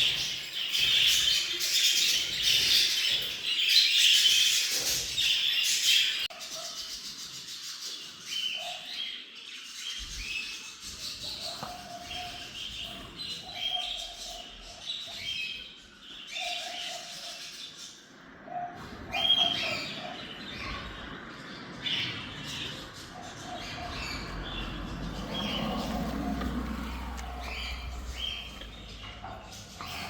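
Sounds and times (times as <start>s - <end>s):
small parrots chirping: 19.2s - 30.0s.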